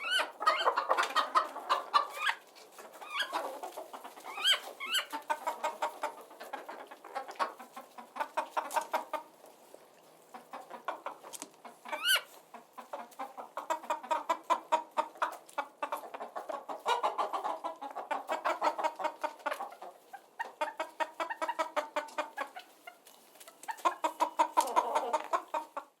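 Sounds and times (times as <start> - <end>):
chickens clucking: 0.0 - 26.0.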